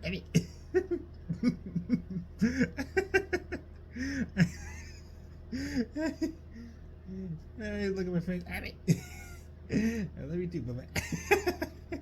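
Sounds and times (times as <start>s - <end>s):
person laughing softly: 0.4s - 7.4s.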